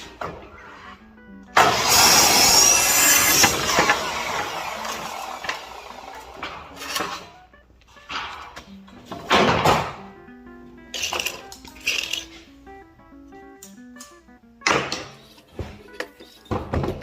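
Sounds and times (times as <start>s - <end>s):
power tool working wood: 1.6s - 6.6s.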